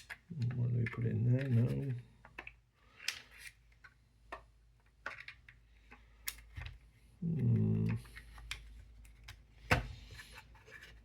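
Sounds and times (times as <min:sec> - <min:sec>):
person humming hmm: 0:07.2 - 0:08.0.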